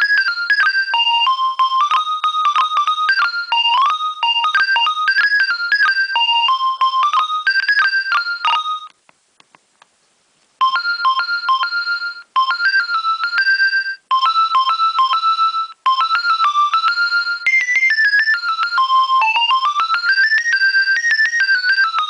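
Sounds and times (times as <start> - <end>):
mobile phone ringtone melody: 0.0 - 9.0, 10.6 - 22.0.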